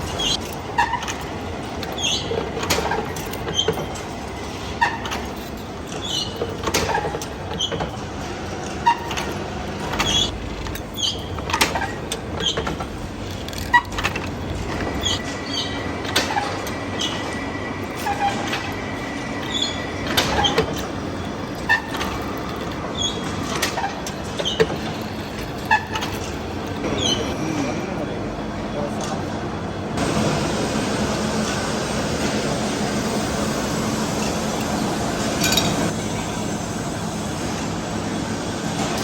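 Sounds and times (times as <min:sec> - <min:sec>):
steady mechanical hum: 0:00.0 - 0:39.0.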